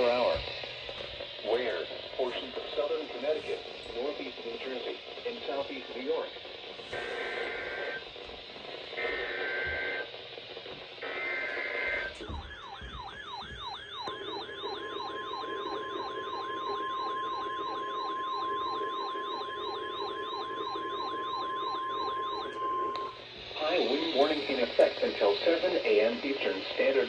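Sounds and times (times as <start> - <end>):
steady warning alarm tone: 0.0 - 27.0
sweeping siren-like alert: 11.2 - 23.2.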